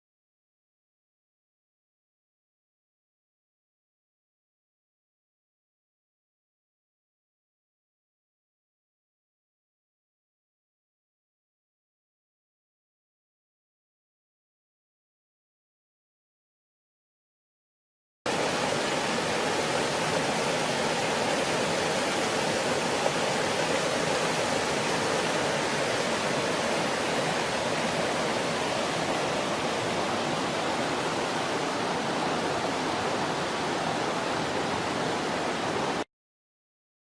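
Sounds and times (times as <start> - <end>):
waterfall rushing: 18.3 - 36.1.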